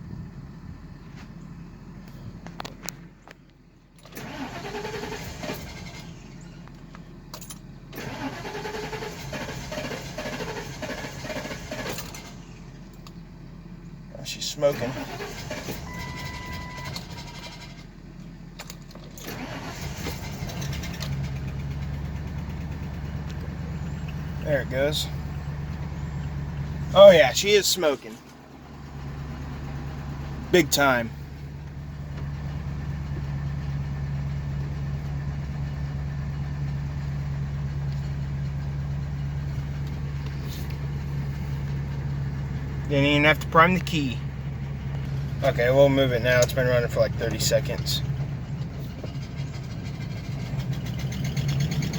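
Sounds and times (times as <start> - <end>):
van engine cranking: 1.6 - 51.9
dashboard warning chime: 15.9 - 17.5.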